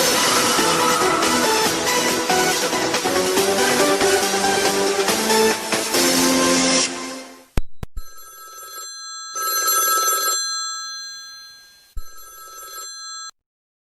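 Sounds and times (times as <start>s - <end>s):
electronic music: 0.0s - 7.2s
telephone bell ringtone: 8.0s - 13.4s.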